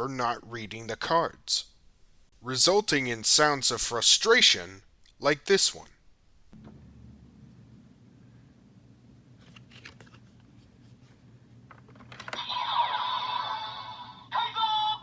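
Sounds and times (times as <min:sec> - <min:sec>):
electronic toy sound effect: 0:12.3 - 0:15.0.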